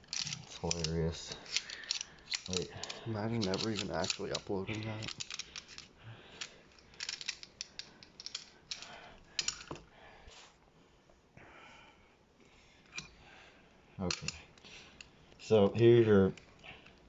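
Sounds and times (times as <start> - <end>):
pistol parts clicking and rattling: 0.0 - 9.9, 14.0 - 17.0.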